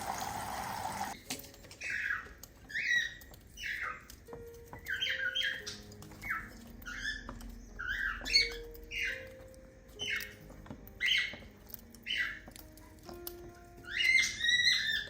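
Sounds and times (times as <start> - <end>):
cockatiels chirping: 1.8 - 12.5, 13.8 - 15.0.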